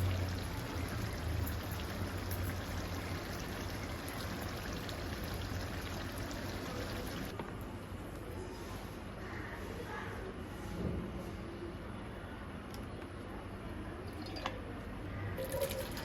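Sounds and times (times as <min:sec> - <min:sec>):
tap water running: 0:00.0 - 0:07.3.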